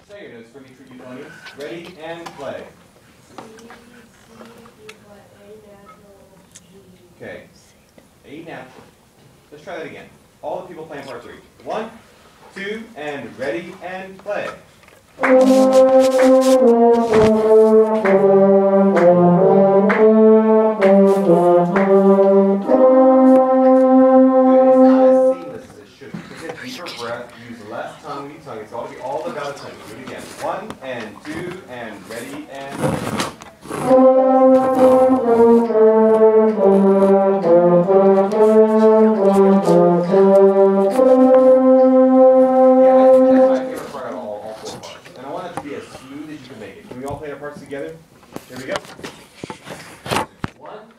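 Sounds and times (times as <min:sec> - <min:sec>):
concert band playing held chords: 0:15.2 - 0:25.4, 0:33.8 - 0:43.8.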